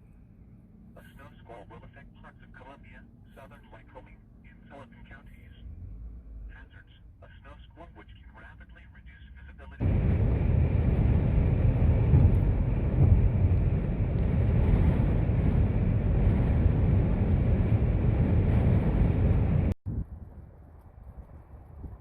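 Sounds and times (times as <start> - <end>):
strong wind on microphone: 9.8 - 22.0.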